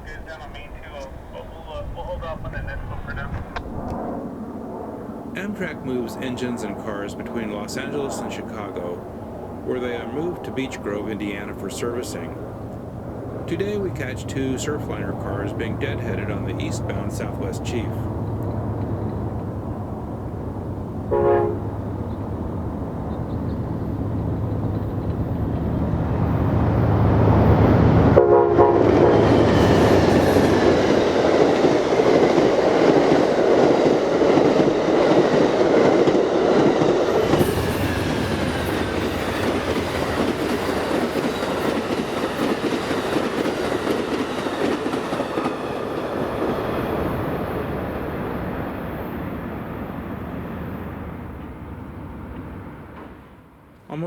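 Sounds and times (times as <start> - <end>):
diesel locomotive rumble: 0.0 - 4.0, 5.2 - 53.5
train horn blasts: 21.1 - 21.9, 28.1 - 30.6
train wheels clattering on rails: 28.8 - 49.3.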